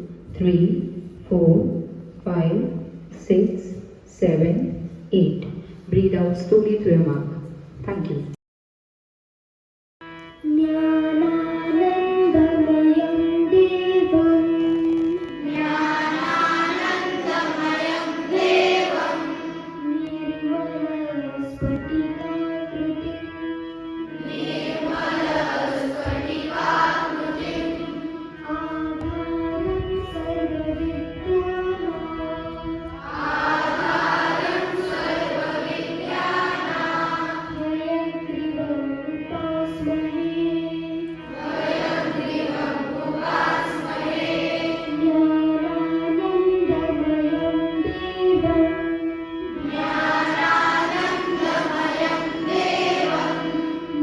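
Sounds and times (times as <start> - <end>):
indian classical music: 0.0 - 3.2, 10.0 - 54.0
steady drone: 49.5 - 54.0.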